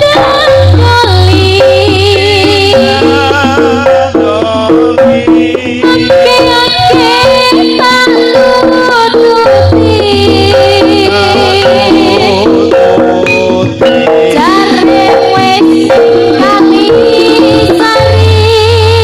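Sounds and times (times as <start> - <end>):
percussion: 0.0 - 19.0
gamelan ensemble music: 2.7 - 18.3.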